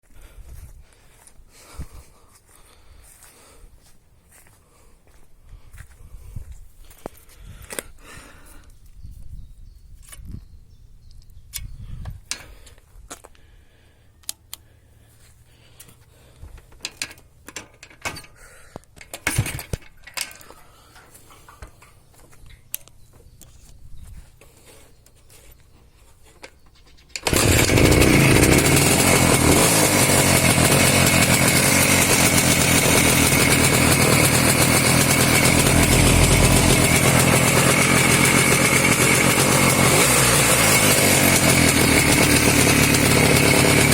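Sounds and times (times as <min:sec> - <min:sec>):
two-stroke motorcycle engine running: 0:27.2 - 0:43.9.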